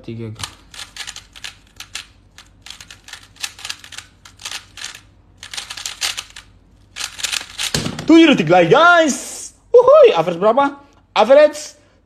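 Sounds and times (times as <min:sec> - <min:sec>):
speedcube plastic clicks: 0:00.4 - 0:07.8.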